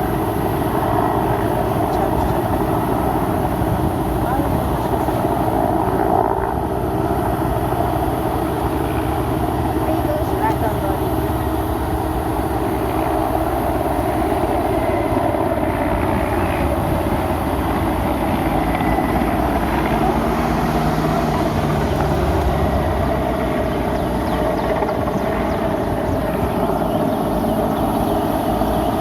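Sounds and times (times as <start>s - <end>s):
vehicle noise: 0.0s - 29.0s.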